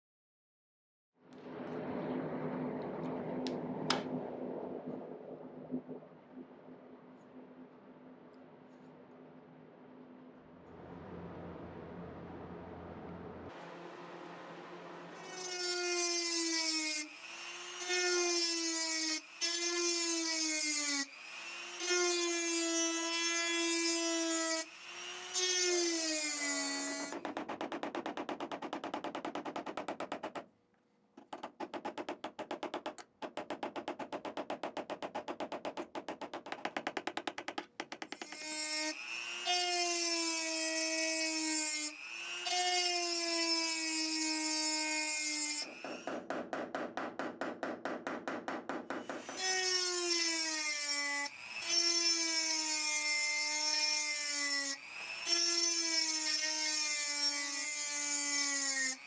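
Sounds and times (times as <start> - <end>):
rotary tool whining: 15.1 - 27.3.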